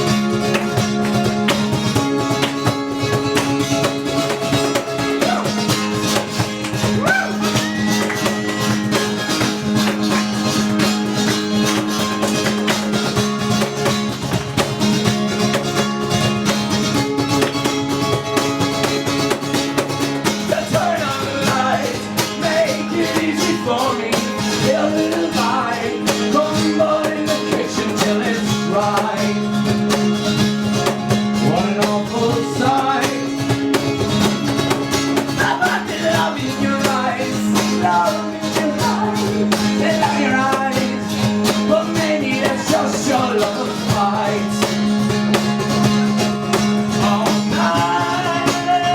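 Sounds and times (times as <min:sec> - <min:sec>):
wavering melodic lead line: 0:00.0 - 0:16.4
acoustic guitar strumming: 0:00.0 - 0:48.9.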